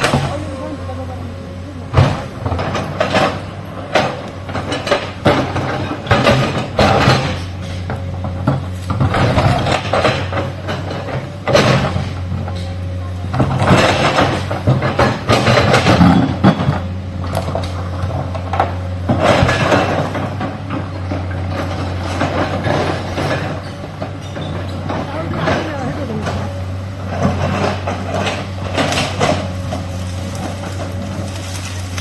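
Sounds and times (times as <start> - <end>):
diesel engine hum: 0.0 - 32.0.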